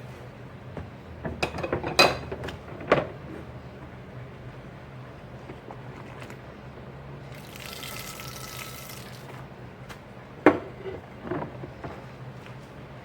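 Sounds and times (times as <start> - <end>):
sink tap running: 7.3 - 9.3.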